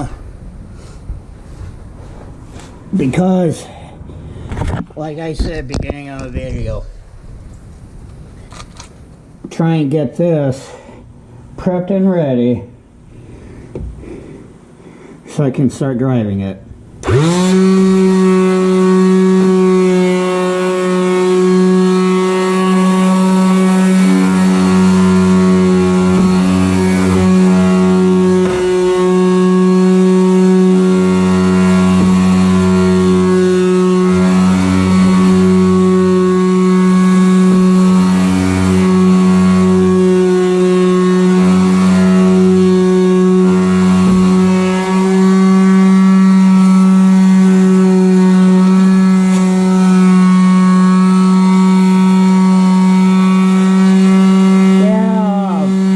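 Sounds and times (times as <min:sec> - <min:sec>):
electric sander whining: 0:00.0 - 0:03.0, 0:17.0 - 0:55.9
sander grinding on metal: 0:17.0 - 0:55.9.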